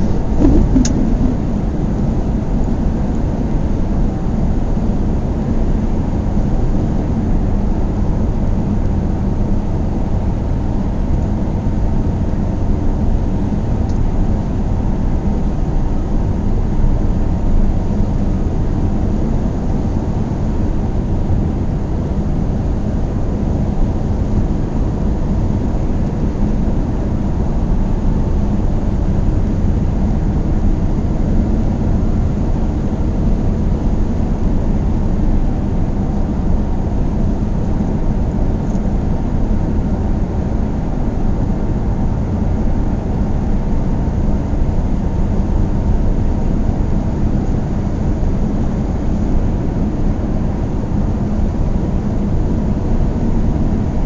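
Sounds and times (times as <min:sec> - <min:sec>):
car driving rumble: 0:00.0 - 0:02.0.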